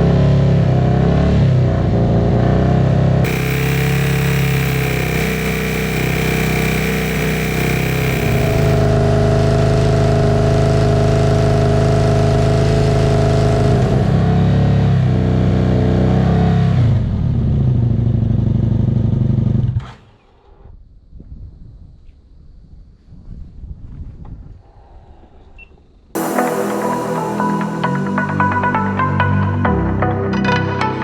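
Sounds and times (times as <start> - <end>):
motorcycle engine running: 3.3 - 9.1.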